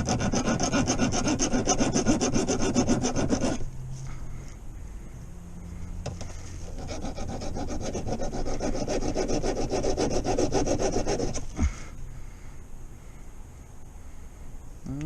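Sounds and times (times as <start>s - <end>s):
file rasping on metal: 0.0s - 3.6s, 6.7s - 11.5s.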